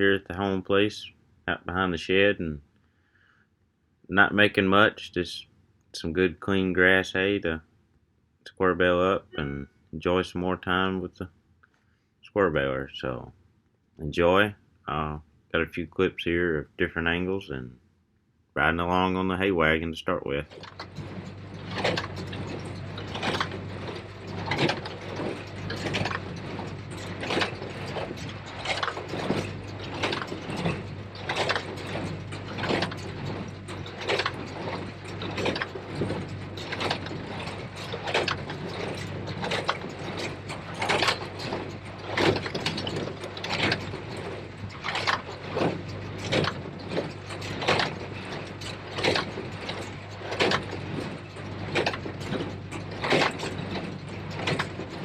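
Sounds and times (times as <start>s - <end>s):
tractor engine drone: 0.0s - 2.6s, 8.5s - 11.3s, 18.6s - 55.0s
baler mechanism clanking: 20.3s - 55.0s.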